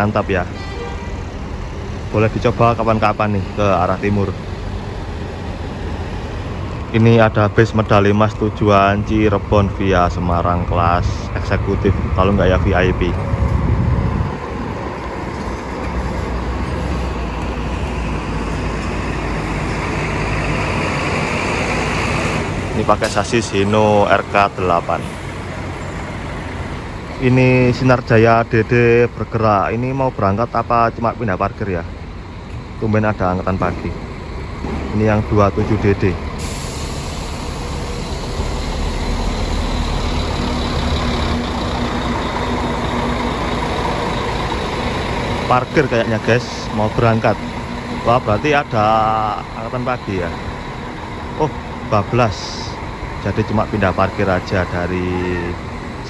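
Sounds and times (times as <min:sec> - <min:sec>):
bus engines rumbling: 0:00.0 - 0:56.0.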